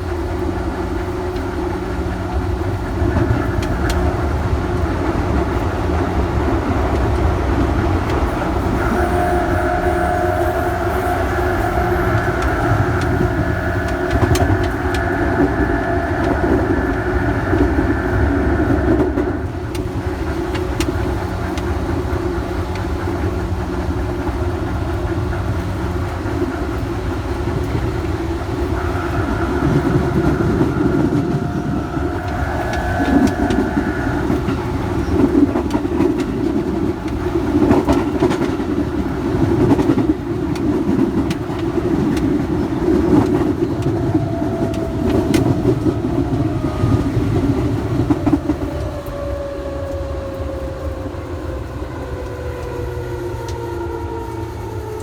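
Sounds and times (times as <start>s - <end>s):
train rumbling on rails: 0.0s - 55.0s
thin whine tones: 7.8s - 20.7s, 26.8s - 36.9s
tone gliding downward: 8.4s - 19.9s, 27.9s - 35.8s.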